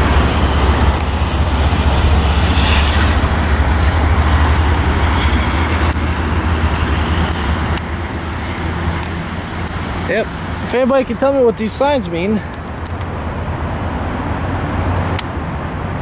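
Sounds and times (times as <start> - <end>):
wind buffeting microphone: 0.0 - 8.0.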